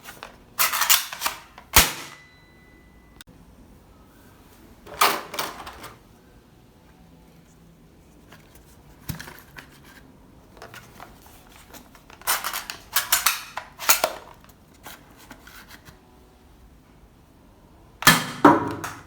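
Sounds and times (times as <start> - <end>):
plastic toy parts clicking: 12.0 - 14.6.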